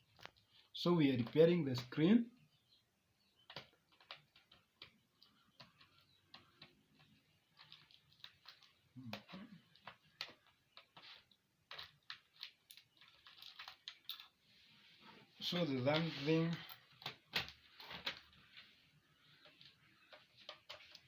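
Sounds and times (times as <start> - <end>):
small clicks and taps of laptop parts: 0.1 - 1.9, 3.4 - 14.4, 19.3 - 21.0.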